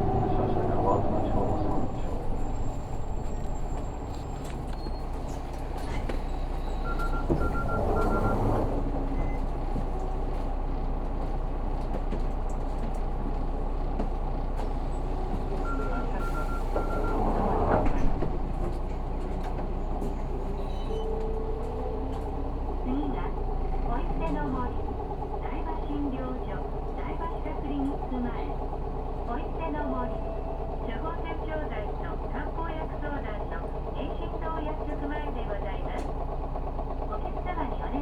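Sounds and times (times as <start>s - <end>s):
bus diesel engine idling: 0.0s - 38.0s
short warning beeps: 6.8s - 8.5s, 15.6s - 17.2s.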